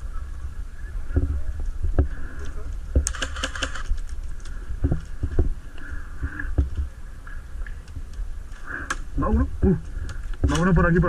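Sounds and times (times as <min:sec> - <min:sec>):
footsteps: 0:01.0 - 0:11.0
sharp clicks: 0:03.0 - 0:05.1.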